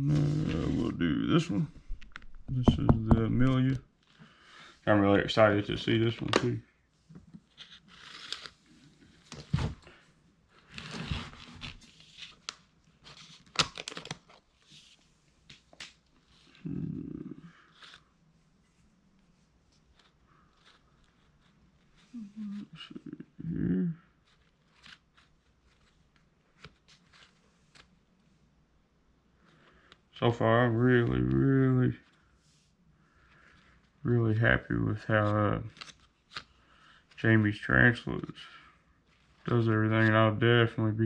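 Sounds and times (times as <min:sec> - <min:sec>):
packaging tearing and crinkling: 0:10.6 - 0:14.5.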